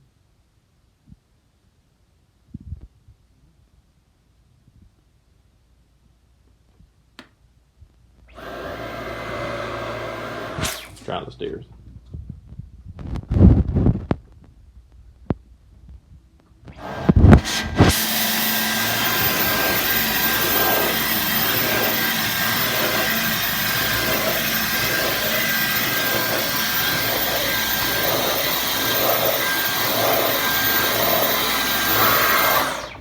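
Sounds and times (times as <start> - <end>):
vacuum cleaner motor whining: 8.3 - 11.1, 16.7 - 33.0.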